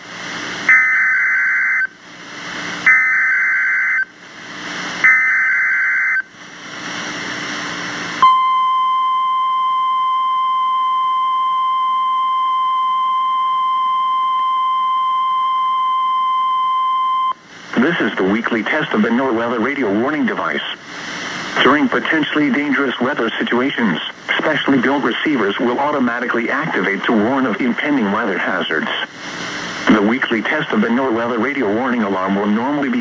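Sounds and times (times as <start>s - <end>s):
steady attention tone: 8.2s - 20.4s
radio hiss: 17.3s - 33.0s.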